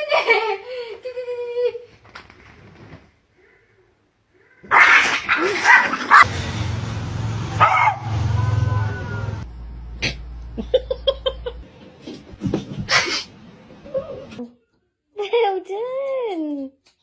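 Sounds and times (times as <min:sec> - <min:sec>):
dog barking and yipping: 0:04.7 - 0:06.3, 0:07.6 - 0:08.2.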